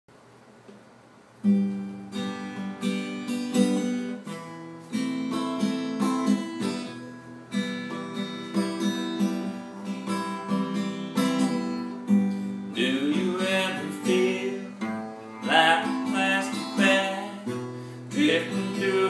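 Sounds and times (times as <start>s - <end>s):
acoustic guitar strumming: 1.4s - 19.0s.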